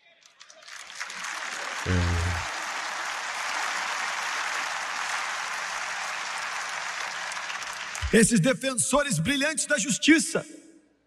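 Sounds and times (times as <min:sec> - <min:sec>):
congregation applauding: 0:00.2 - 0:08.6
low voiced sound: 0:01.9 - 0:02.5.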